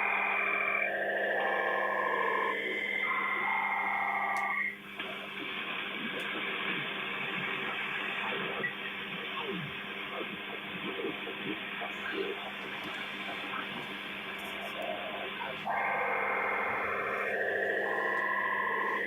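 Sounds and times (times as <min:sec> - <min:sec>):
faint wavering radio signals: 0:00.0 - 0:19.0
radio band noise hiss: 0:00.0 - 0:19.0
multi-tone data signal warbling: 0:14.5 - 0:19.0.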